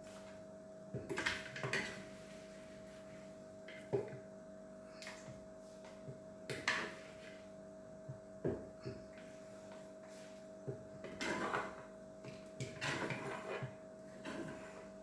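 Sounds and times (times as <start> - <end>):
spoon scraping a container: 11.1 - 11.9, 12.6 - 14.9.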